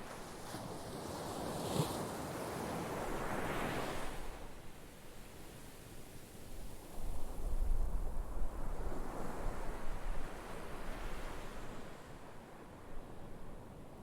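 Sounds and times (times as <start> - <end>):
wind rumble on microphone: 6.8 - 11.8.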